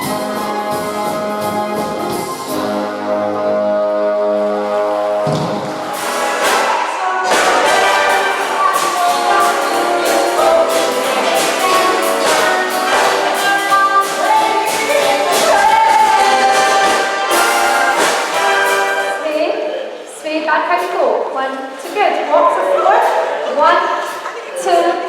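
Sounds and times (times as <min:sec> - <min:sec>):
brass section: 0:00.0 - 0:20.1
swing big band playing: 0:00.0 - 0:24.4
steady drum beat: 0:05.3 - 0:19.6.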